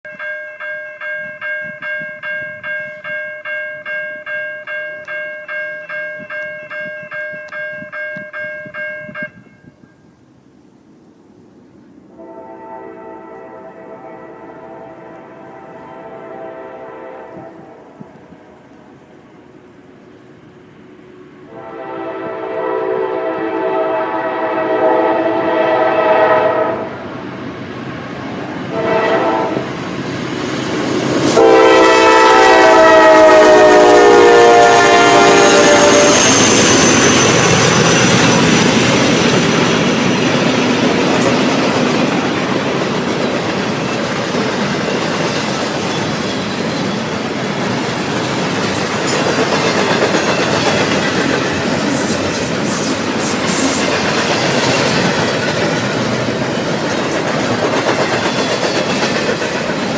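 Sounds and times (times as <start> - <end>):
train rumbling past: 8.7 - 59.9
diesel locomotive horn: 12.1 - 18.8, 21.0 - 27.1, 28.7 - 29.8, 31.2 - 38.1
wheels clacking on rail joints: 34.6 - 59.9.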